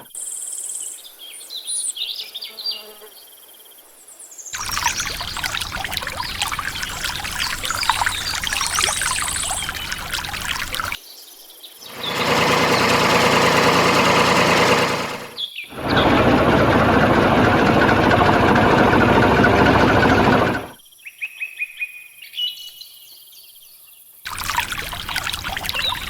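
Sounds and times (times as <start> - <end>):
machine running: 4.6 - 11.0, 11.9 - 20.8, 24.3 - 26.0
water pouring and trickling: 4.6 - 11.0, 15.7 - 20.8, 24.3 - 26.0.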